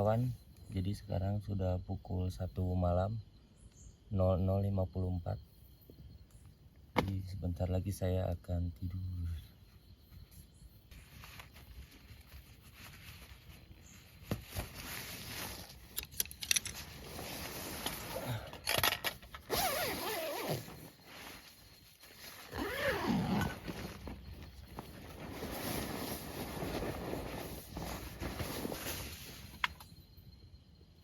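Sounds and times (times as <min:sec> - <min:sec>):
handling rustling and clicks: 0:14.4 - 0:17.0
squeaky sliding sounds: 0:19.5 - 0:24.1.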